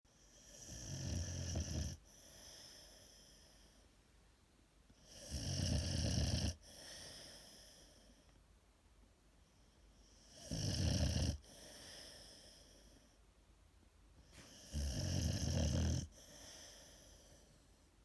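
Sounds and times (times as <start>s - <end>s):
dog snoring: 0.1s - 3.2s, 5.0s - 7.4s, 10.1s - 12.3s, 14.4s - 17.4s.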